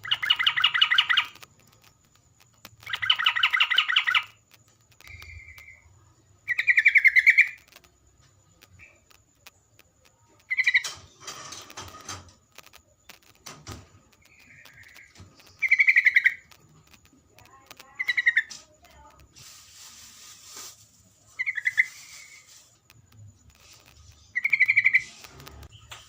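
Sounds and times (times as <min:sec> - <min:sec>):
bird chirping song: 0:00.0 - 0:01.8, 0:02.8 - 0:07.8, 0:08.6 - 0:09.6, 0:10.2 - 0:12.0, 0:14.1 - 0:18.8, 0:21.3 - 0:22.7, 0:23.4 - 0:26.0
clicks: 0:00.0 - 0:05.8, 0:07.3 - 0:19.4, 0:22.8 - 0:26.0
faint hiss: 0:18.5 - 0:26.0.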